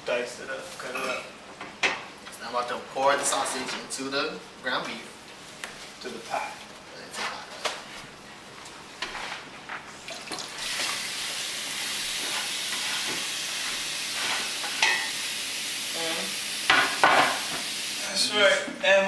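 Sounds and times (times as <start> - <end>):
sausage sizzling in a pot: 10.0 - 18.4.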